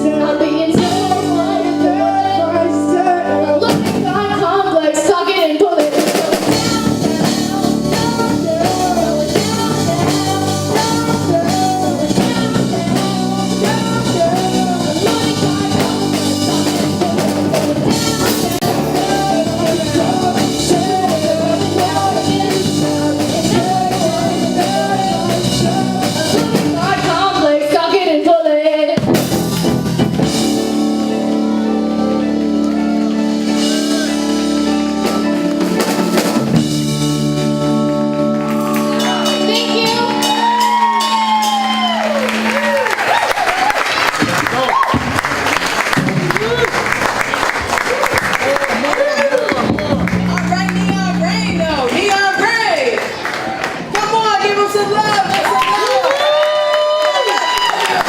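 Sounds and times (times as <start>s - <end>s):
live rock band playing: 0.0s - 28.2s, 28.9s - 58.0s
sung vocals: 0.0s - 29.5s.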